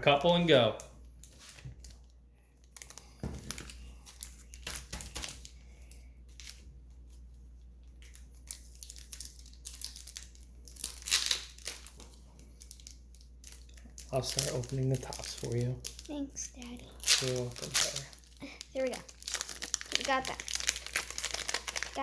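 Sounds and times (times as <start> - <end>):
card packaging tearing and crinkling: 2.8 - 5.6, 8.0 - 22.0.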